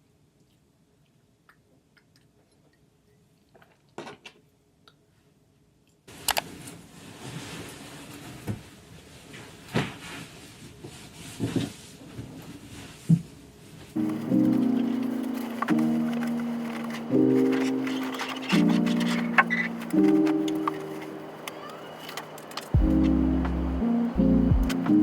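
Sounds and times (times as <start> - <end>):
rustling: 6.1 - 25.0.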